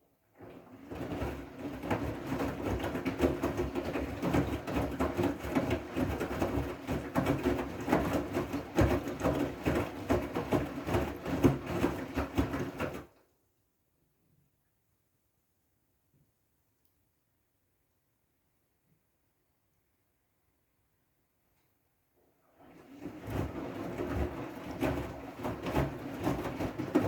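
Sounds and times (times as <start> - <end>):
washing machine drum churning: 0.4 - 13.1, 22.5 - 27.0.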